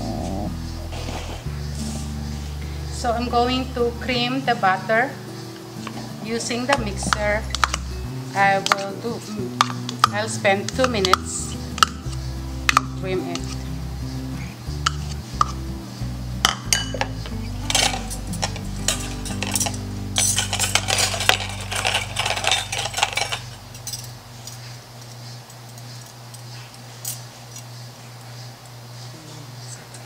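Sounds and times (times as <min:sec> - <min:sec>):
background music: 0:00.0 - 0:24.6
mixer beaters clattering in bowl: 0:17.6 - 0:24.0.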